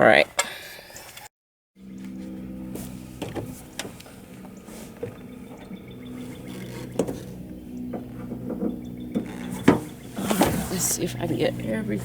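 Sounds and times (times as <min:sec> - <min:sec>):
steady motor hum: 0:01.8 - 0:12.0
latch parts clicking: 0:03.2 - 0:11.0.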